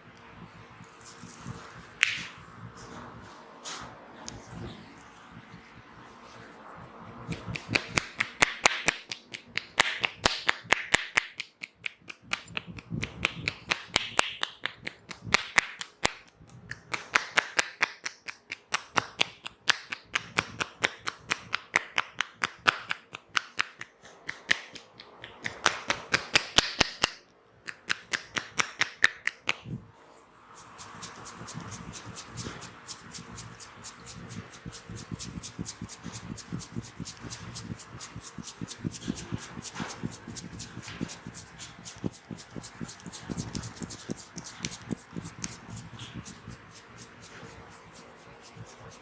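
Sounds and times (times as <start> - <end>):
hands tapping and slapping head: 7.3 - 29.7.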